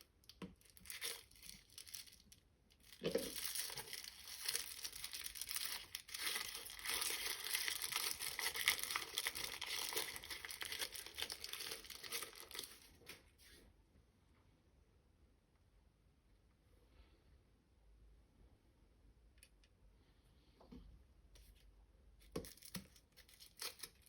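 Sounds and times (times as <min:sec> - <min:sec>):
packaging crinkling: 0:00.3 - 0:13.2, 0:22.4 - 0:24.0.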